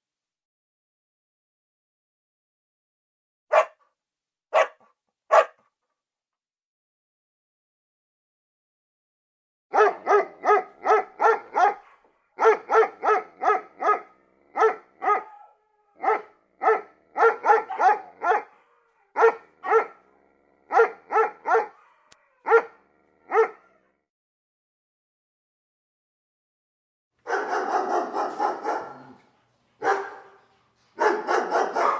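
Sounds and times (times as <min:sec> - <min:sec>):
dog barking: 0:03.5 - 0:03.9, 0:04.5 - 0:05.7, 0:09.7 - 0:23.9, 0:27.2 - 0:29.2, 0:29.8 - 0:31.9.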